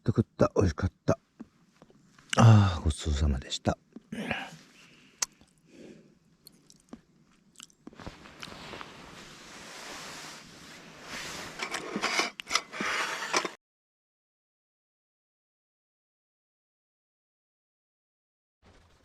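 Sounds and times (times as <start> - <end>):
crunching and rustling: 6.5 - 12.6.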